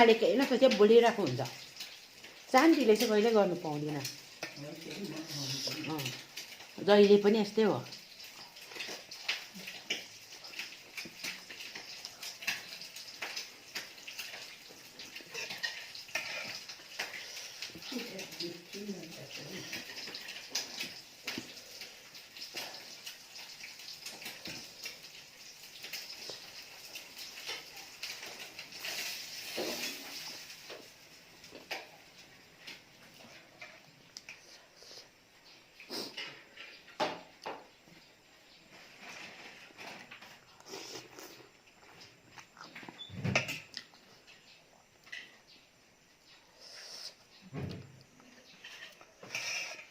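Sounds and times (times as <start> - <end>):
wet chewing and lip smacks: 40.4 - 43.1.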